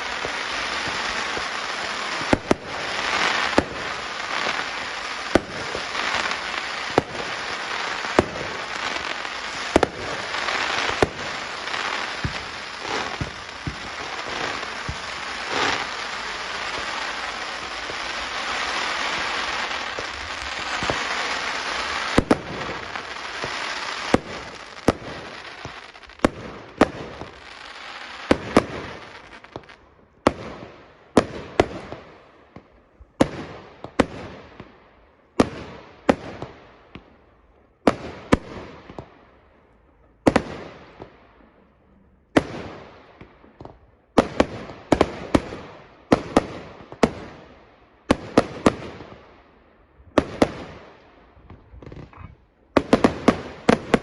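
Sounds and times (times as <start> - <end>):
fireworks crackling: 0.0 - 34.7, 50.1 - 54.0
fireworks sharp bangs: 0.0 - 37.1, 42.3 - 49.4, 50.1 - 54.0.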